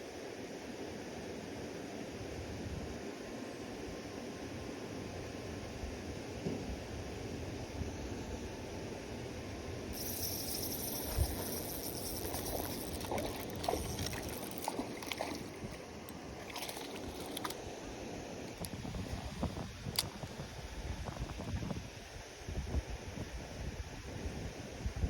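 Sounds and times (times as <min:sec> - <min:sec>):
steady outdoor rumble: 0:05.1 - 0:25.0
water sloshing and splashing: 0:10.5 - 0:17.6
short sharp splashes: 0:10.9 - 0:15.8.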